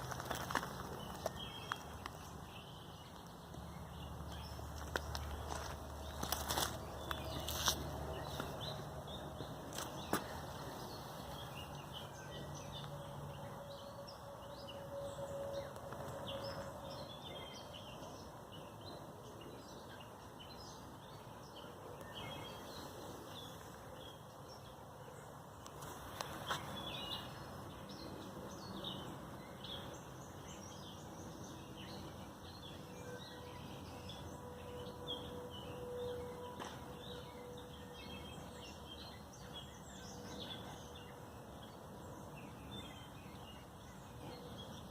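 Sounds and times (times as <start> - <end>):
small birds chirping: 0.0 - 14.8.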